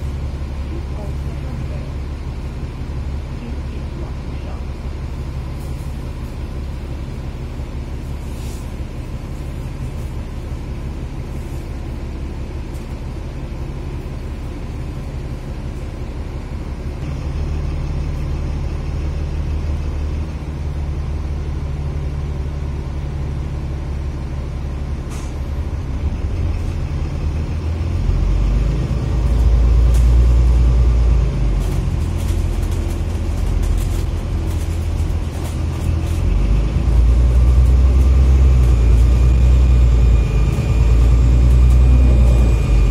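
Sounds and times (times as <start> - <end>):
bus engine low drone: 0.0 - 42.9.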